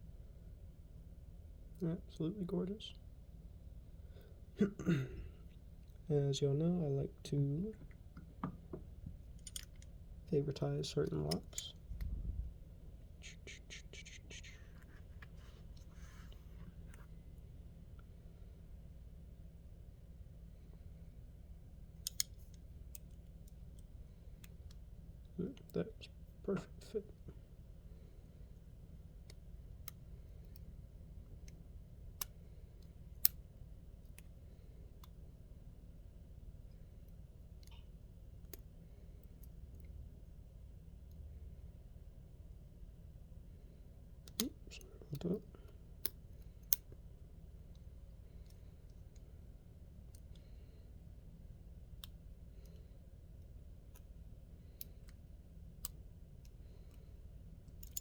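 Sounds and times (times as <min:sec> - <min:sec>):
low steady hum: 0:00.0 - 0:58.0
lock pick clicking in a lock: 0:09.4 - 0:09.9, 0:22.0 - 0:23.2, 0:57.7 - 0:58.0.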